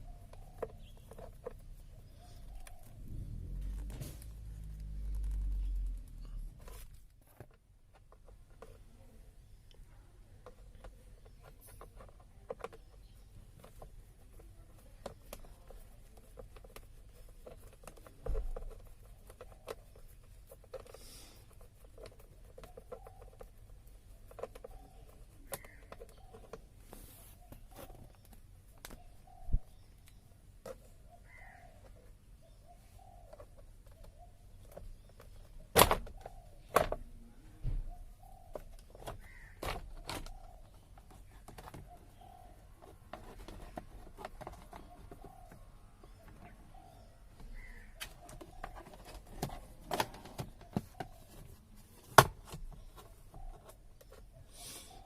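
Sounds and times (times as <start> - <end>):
bird calling: 0.0 - 6.5, 22.4 - 51.7, 52.7 - 55.0.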